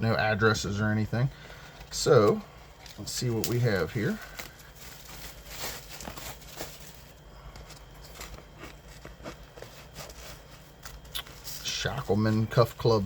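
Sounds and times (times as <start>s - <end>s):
packaging rustling: 1.8s - 12.0s.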